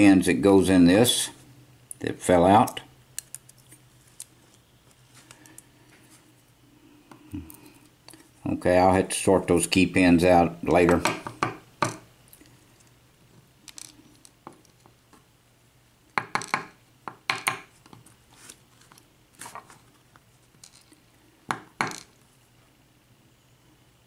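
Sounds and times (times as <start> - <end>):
small metal parts clinking: 13.6 - 14.9, 20.6 - 21.0.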